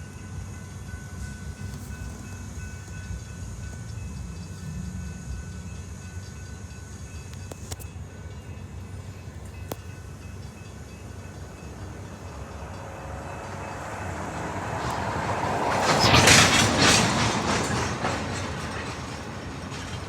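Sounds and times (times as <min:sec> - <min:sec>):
freight train rolling past: 0:00.0 - 0:20.0
wheels clicking over rail joints: 0:00.9 - 0:20.0.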